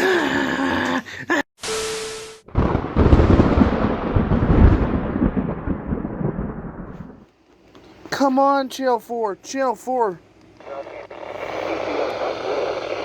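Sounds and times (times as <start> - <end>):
loud rumbling boom: 2.5 - 7.2.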